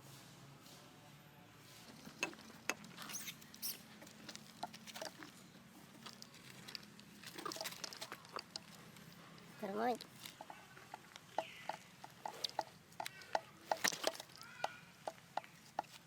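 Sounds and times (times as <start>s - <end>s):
small animal squeaking: 2.2s - 4.0s, 9.4s - 16.0s.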